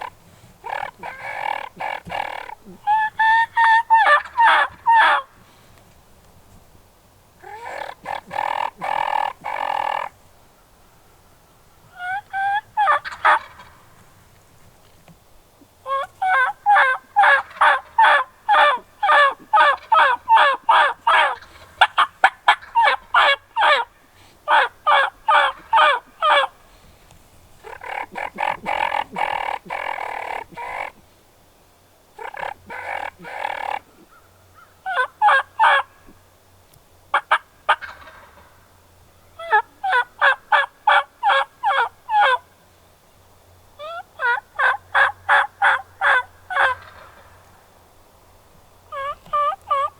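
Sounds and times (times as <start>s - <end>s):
turkey yelping: 0.0s - 5.3s, 7.4s - 10.1s, 11.9s - 13.8s, 15.9s - 23.9s, 24.5s - 26.6s, 27.6s - 31.0s, 32.2s - 35.9s, 37.1s - 38.5s, 39.4s - 42.4s, 43.8s - 47.2s, 48.9s - 49.9s
rough turkey call: 0.0s - 5.6s, 7.4s - 10.2s, 10.8s - 14.1s, 15.8s - 26.9s, 27.6s - 31.0s, 32.2s - 36.2s, 37.1s - 38.6s, 39.2s - 42.5s, 43.8s - 47.5s, 48.9s - 49.9s.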